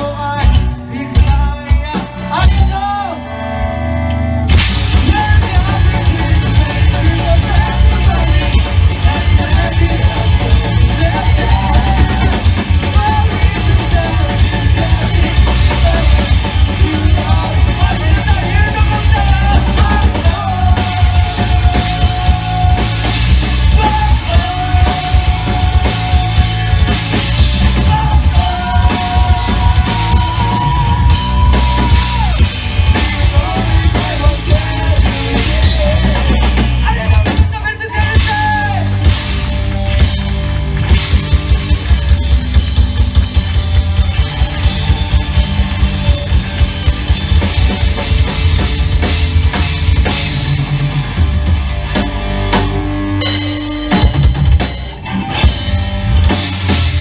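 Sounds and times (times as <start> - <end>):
fast dense drumming: 0.0 - 3.1, 4.5 - 57.0
rock band playing live: 0.0 - 57.0.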